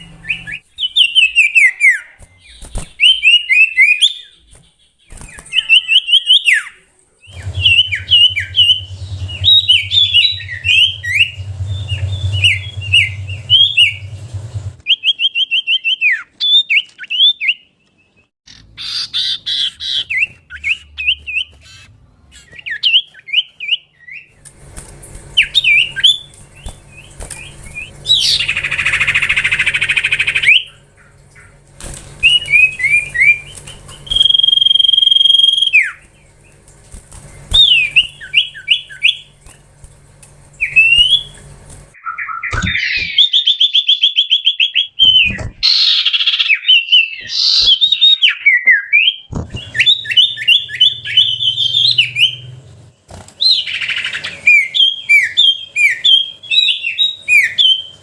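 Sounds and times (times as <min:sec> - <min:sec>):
bird singing whistled chirps: 0:00.2 - 0:14.2, 0:32.2 - 0:36.0, 0:37.5 - 0:39.3, 0:40.6 - 0:41.4, 0:42.0 - 0:52.5, 0:53.4 - 0:58.0.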